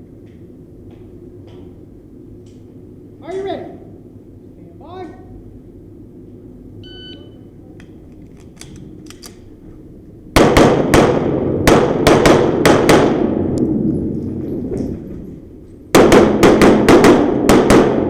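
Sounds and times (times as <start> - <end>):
pistol shots: 10.4 - 13.2, 15.9 - 18.0.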